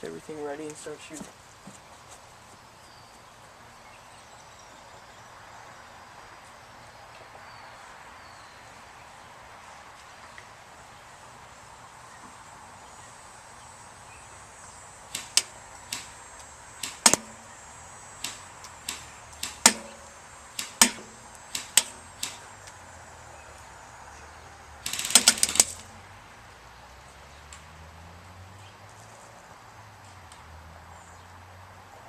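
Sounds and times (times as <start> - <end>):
airsoft gun firing single shots: 15.1 - 16.2, 16.8 - 17.5, 18.2 - 22.5, 24.8 - 25.9
airsoft gun full-auto burst: 24.8 - 25.9.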